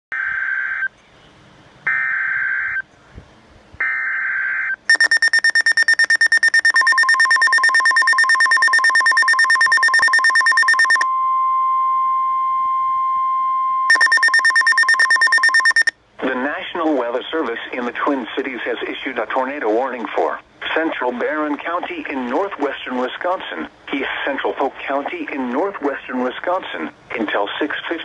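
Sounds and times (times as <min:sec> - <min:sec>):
steady warning alarm tone: 0:03.8 - 0:16.0
rapid pulsing beep: 0:04.9 - 0:11.0, 0:13.9 - 0:15.9
warbling digital data tones: 0:04.9 - 0:11.0, 0:13.9 - 0:15.9.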